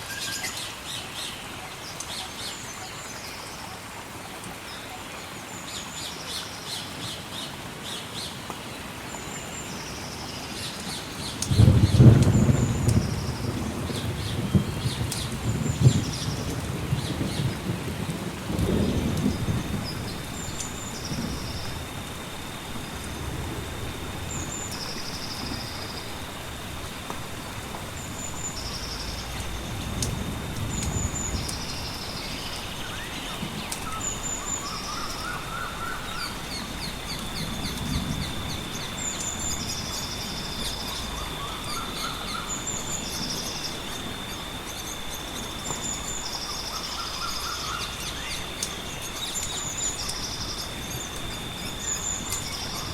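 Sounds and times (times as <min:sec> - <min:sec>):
rain or river noise: 0:00.0 - 0:52.9
fire crackles: 0:07.6 - 0:52.9
low thunder rumbles: 0:11.2 - 0:52.9.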